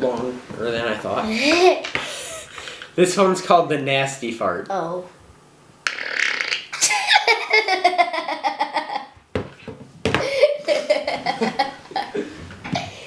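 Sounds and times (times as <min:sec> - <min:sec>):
boys laughing hard: 0:06.8 - 0:09.2, 0:10.2 - 0:13.0.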